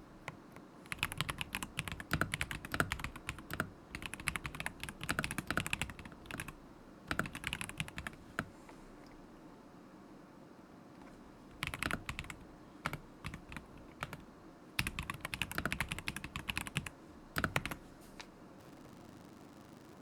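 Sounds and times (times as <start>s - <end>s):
mechanical keyboard typing: 0.2s - 8.5s, 11.5s - 14.2s, 14.8s - 17.8s.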